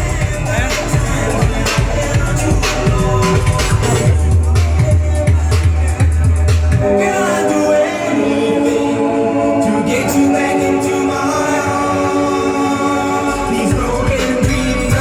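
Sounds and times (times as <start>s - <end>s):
deep bass: 0.0s - 7.1s, 13.3s - 15.0s
sung vocal harmonies: 0.0s - 15.0s.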